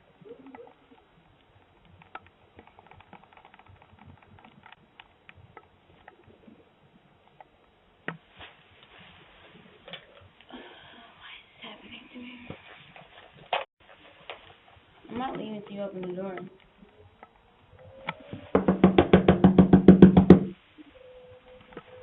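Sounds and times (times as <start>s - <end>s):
small clicks and taps: 0.4s - 6.4s, 15.2s - 17.4s
faint microphone hiss: 3.7s - 22.0s.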